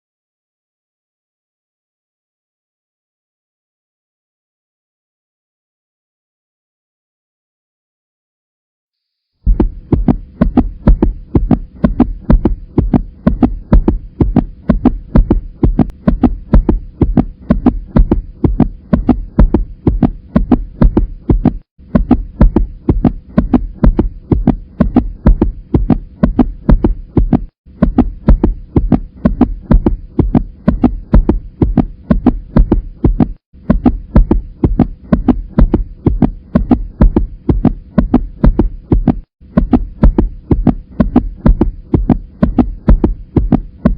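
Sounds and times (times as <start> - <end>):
heartbeat through stethoscope: 9.4 - 43.9
faint hum: 9.5 - 43.9.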